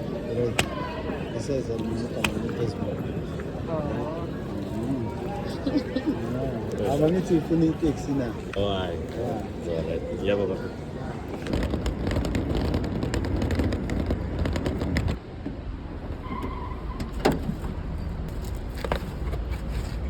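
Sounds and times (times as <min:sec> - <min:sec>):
car road rumble: 0:11.2 - 0:20.0.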